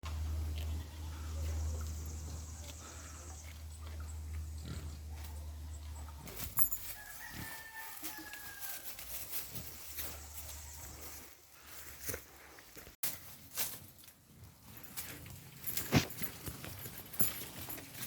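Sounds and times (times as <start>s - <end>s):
low steady rumble: 0.0s - 6.8s
rooster crowing: 6.8s - 9.0s.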